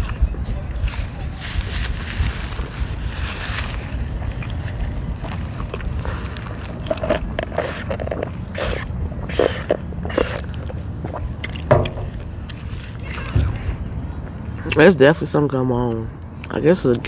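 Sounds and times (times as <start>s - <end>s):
chewing and biting sandwich: 0.9s - 14.9s
low rumble: 10.8s - 14.6s.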